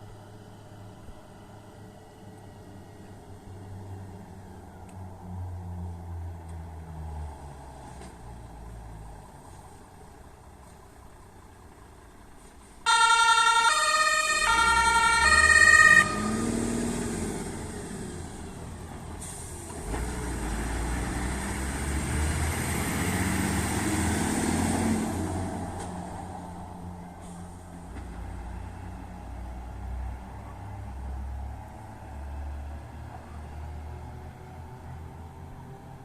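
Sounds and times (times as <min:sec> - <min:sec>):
two-tone siren: 0:12.9 - 0:16.6.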